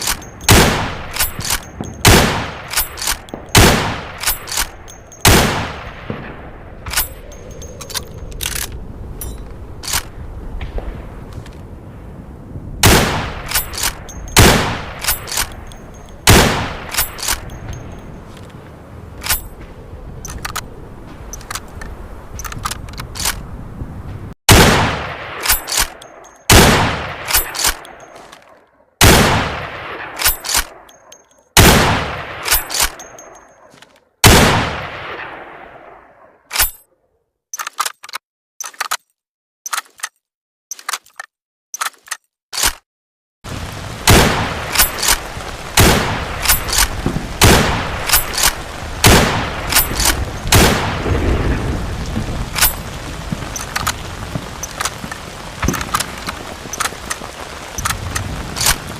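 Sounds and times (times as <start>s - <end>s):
rifle shots echoing: 0.0s - 7.0s, 12.8s - 15.5s, 16.3s - 17.5s, 24.5s - 27.8s, 29.0s - 30.8s, 34.2s - 36.1s, 44.0s - 51.6s
small metallic clicks: 37.5s - 42.8s.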